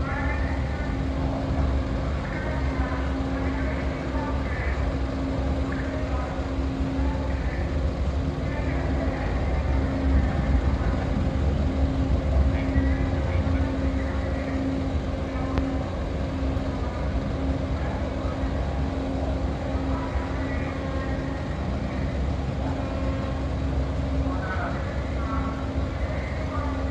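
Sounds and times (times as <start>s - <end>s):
engine hum: 0.0s - 26.9s
faint voices: 0.0s - 26.9s
ferry engines rumbling: 0.0s - 26.9s.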